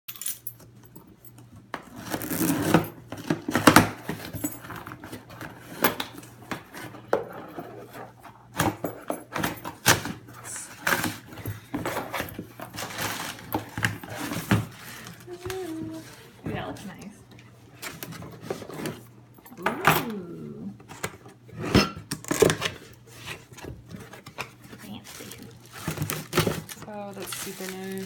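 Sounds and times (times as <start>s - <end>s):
package rustling: 23.3s - 28.0s.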